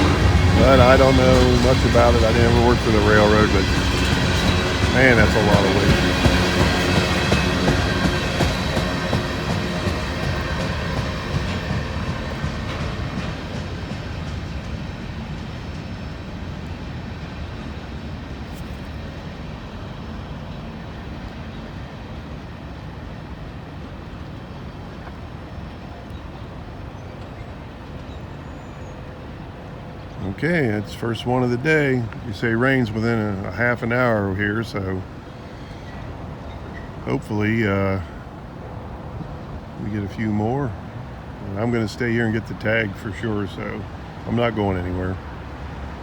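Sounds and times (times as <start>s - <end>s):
steady tones: 0.0s - 12.0s
freight train rumbling on rails: 0.0s - 46.0s.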